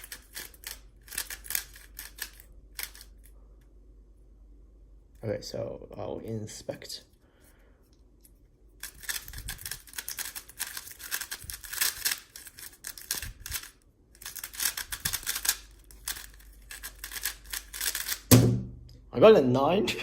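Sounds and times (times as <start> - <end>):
plastic puzzle cube clicking: 0.0 - 3.1, 8.8 - 18.3.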